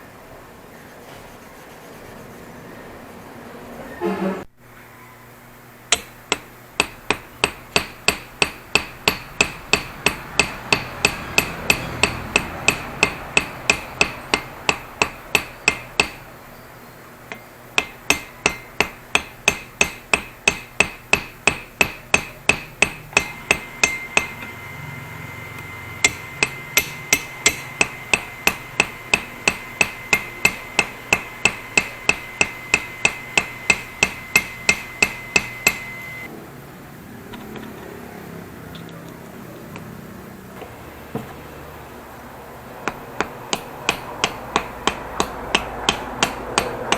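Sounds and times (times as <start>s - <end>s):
hammer striking metal: 5.9s - 16.3s, 17.3s - 36.3s, 42.8s - 46.9s
high metallic ringing tone: 5.9s - 36.3s.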